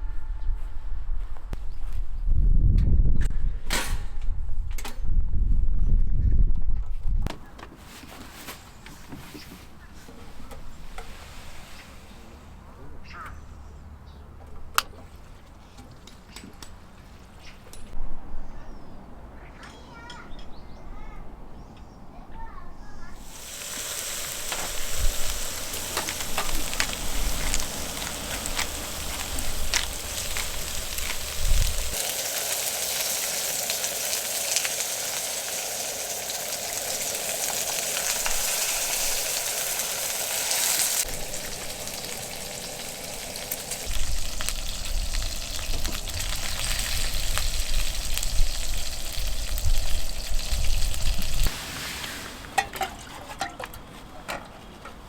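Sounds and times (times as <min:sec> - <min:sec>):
food sizzling in a pan: 0:23.2 - 0:52.4.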